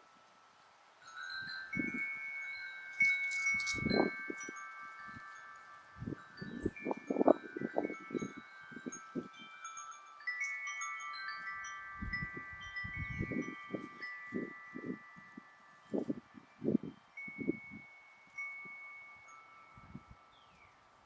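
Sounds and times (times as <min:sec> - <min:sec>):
metal wind chimes ringing: 0:00.0 - 0:21.0
low wind rumbles: 0:11.9 - 0:15.1.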